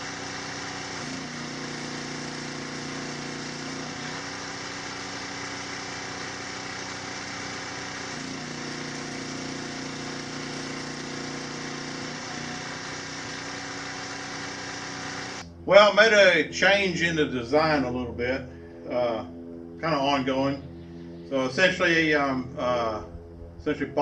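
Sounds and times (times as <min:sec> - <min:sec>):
steady mechanical drone: 0:00.0 - 0:24.0.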